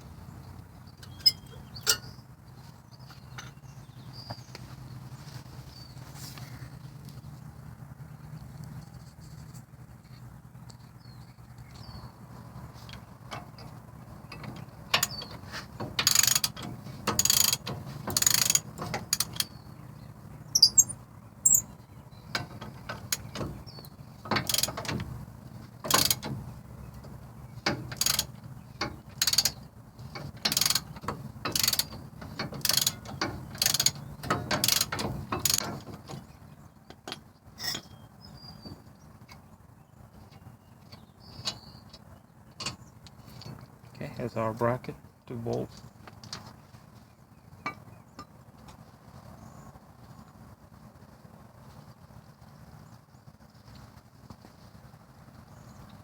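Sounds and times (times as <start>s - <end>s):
ratchet wrench clicking: 14.4s - 19.5s, 24.3s - 25.0s, 25.8s - 26.4s, 27.7s - 35.8s.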